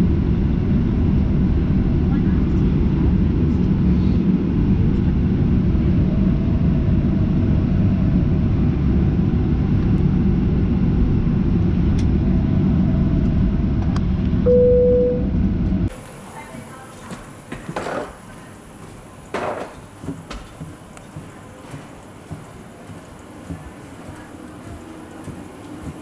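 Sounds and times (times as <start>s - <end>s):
airplane cabin rumble: 0.0s - 26.0s
single steady tone: 14.4s - 15.3s.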